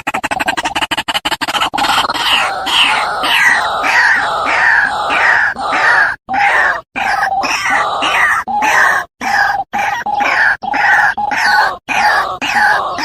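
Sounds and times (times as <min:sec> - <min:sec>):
waterhen harsh croaking calls: 0:00.0 - 0:13.0.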